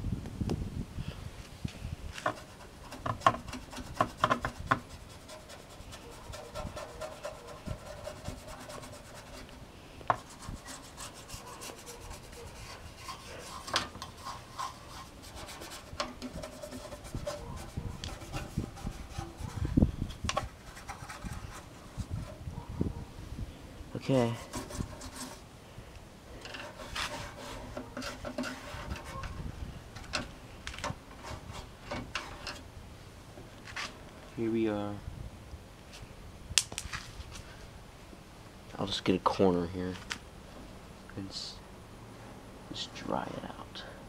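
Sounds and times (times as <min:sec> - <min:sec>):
sharp knocks and clicks: 0:02.2 - 0:04.9
toothbrush scratchy rubbing: 0:02.4 - 0:09.5, 0:10.2 - 0:19.8, 0:26.6 - 0:29.4.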